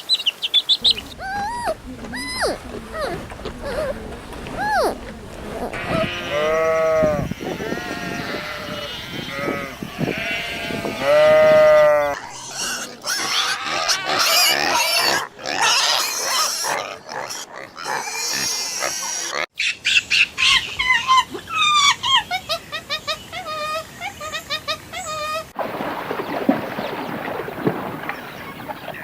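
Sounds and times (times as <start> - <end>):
pigs squealing: 0.8 - 19.5
long pitched bleat: 5.6 - 14.8.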